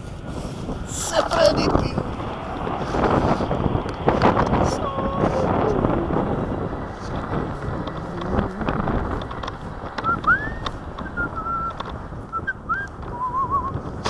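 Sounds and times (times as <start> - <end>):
wind buffeting microphone: 0.0 - 14.0
short whistled notes: 10.0 - 13.8.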